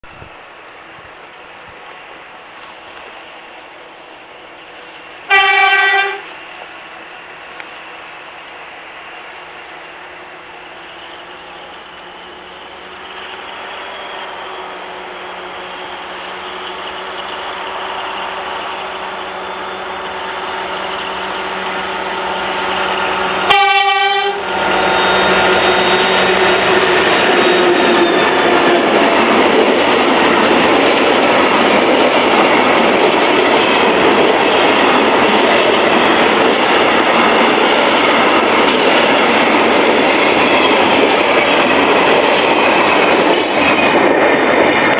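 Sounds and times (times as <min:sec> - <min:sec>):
diesel locomotive engine: 0:00.0 - 0:44.9
train wheels rumbling on rails: 0:00.0 - 0:44.9
train horn blast: 0:05.3 - 0:06.3, 0:22.0 - 0:28.5.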